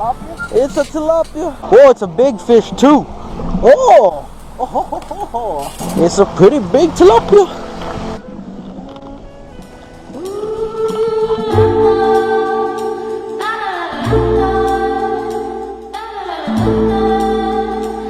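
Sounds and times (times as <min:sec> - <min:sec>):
music with singing: 0:08.5 - 0:18.0.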